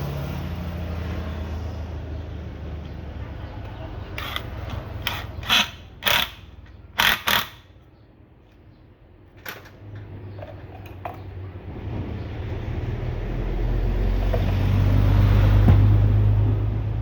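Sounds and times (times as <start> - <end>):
metal tools clacking and scraping: 4.1 - 7.4.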